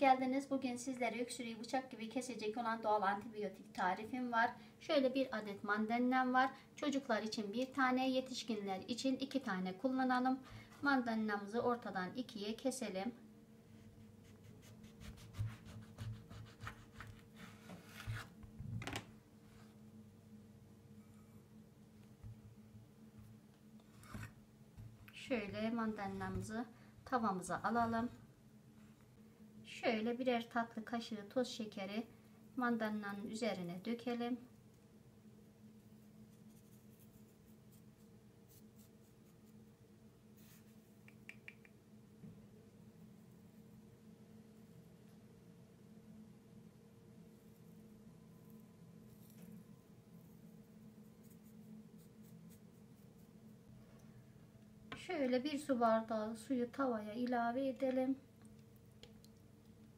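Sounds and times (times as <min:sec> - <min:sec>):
faint room hum: 0:00.0 - 0:59.9
soft scrape: 0:23.8 - 0:24.4.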